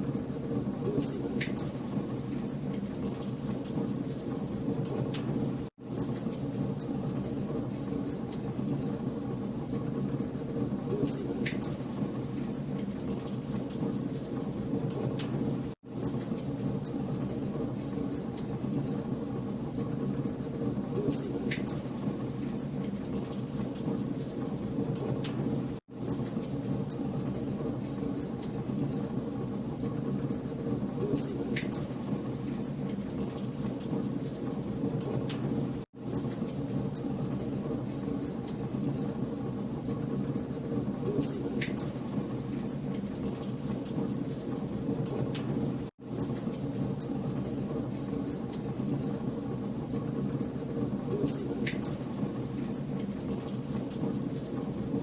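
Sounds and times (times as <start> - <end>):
wood fire crackling and popping: 10.9 - 19.0, 29.8 - 39.1, 39.8 - 49.1.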